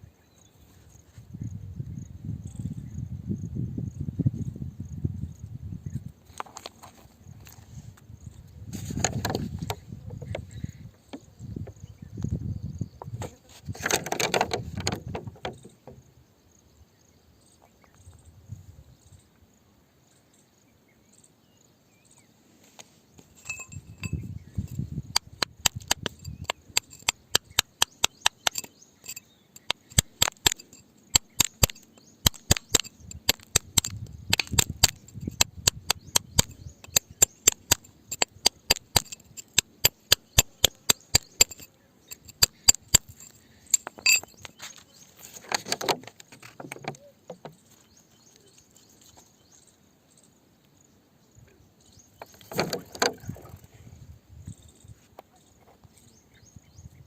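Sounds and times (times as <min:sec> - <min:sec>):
dull scraping knock: 0:08.8 - 0:10.6
hammer striking rock: 0:23.6 - 0:44.3.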